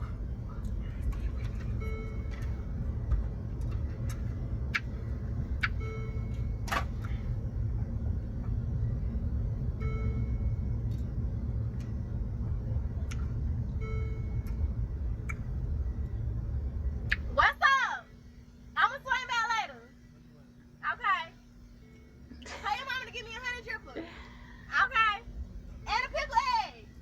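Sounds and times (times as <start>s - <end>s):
low rumble inside a car: 0.0s - 27.0s.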